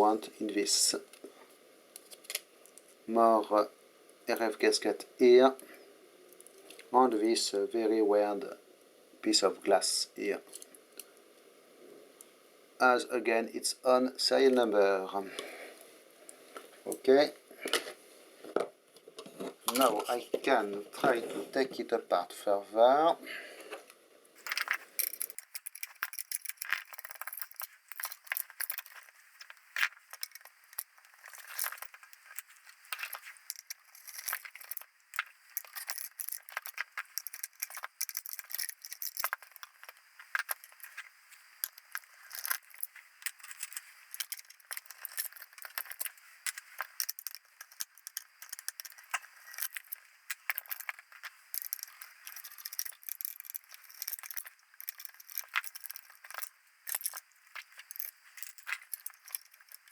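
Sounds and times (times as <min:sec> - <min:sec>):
metal parts clicking and scraping: 0:24.4 - 0:59.9.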